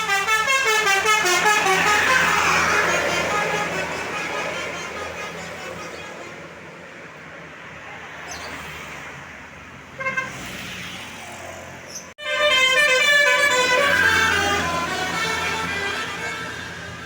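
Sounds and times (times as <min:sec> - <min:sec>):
musical bus horn tune: 0:00.0 - 0:06.6, 0:10.0 - 0:10.4, 0:12.2 - 0:17.0
traffic noise: 0:00.0 - 0:17.0.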